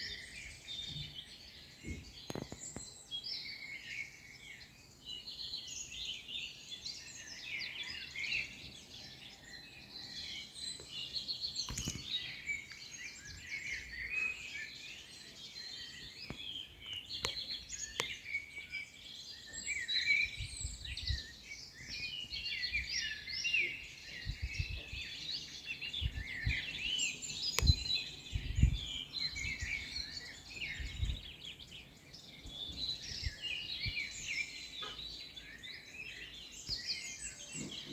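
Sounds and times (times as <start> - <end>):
birds chirping: 0.0 - 37.9.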